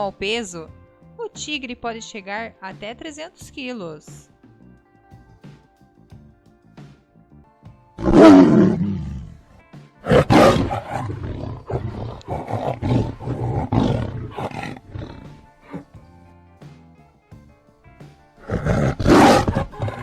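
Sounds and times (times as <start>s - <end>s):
faint background music: 0.0s - 20.0s
tiger roaring: 8.0s - 15.9s, 18.4s - 20.0s.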